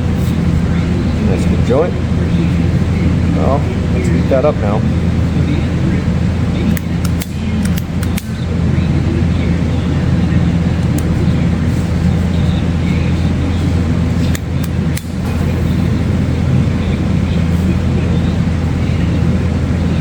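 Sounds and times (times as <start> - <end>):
heat gun fan hum: 0.0 - 20.0
light clicks: 6.7 - 8.4.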